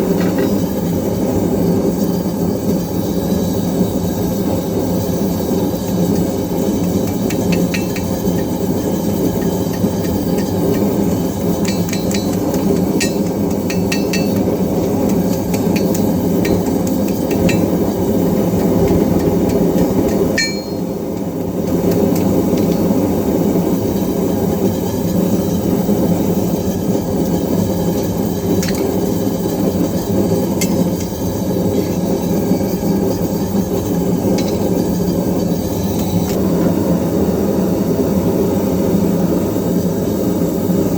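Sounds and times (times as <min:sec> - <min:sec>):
hammer striking hot iron on anvil: 0:05.0 - 0:36.4.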